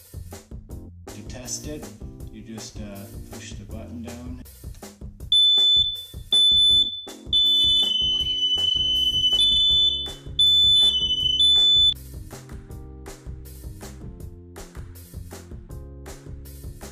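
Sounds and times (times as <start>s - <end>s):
smoke alarm high-pitched beeps: 5.3s - 12.0s
lower second alarm tone: 5.4s - 12.0s.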